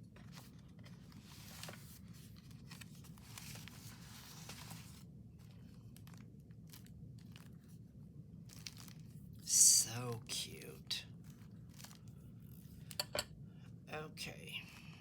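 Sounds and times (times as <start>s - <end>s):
paper pages rustling: 0.0s - 7.8s, 8.5s - 9.2s, 11.2s - 12.1s
low room hum: 0.0s - 15.0s.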